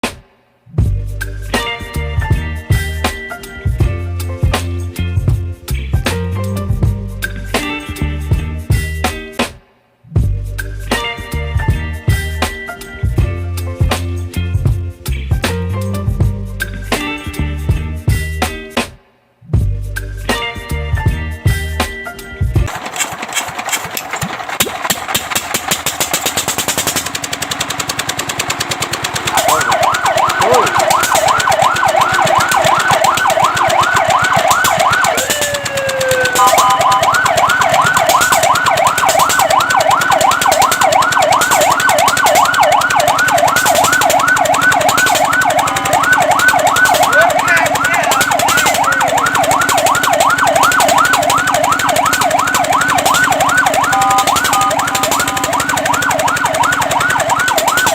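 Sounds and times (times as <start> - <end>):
rapid steady rattle: 22.6 - 47.2, 47.8 - 57.9
fire truck siren yelping: 25.8 - 57.9.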